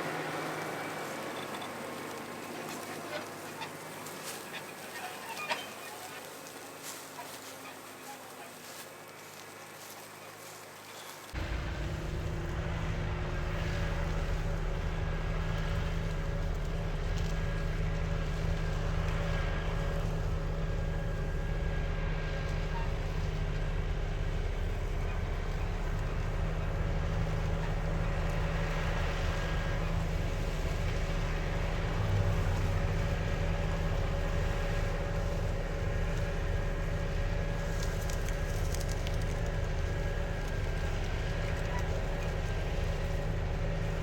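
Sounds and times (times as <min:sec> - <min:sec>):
tractor engine drone: 0:00.0 - 0:44.0
transmission gear whine: 0:11.4 - 0:44.0.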